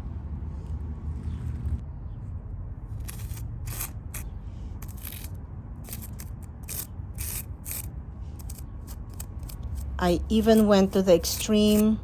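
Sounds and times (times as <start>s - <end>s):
hand tool scraping paving joints: 3.0s - 12.0s.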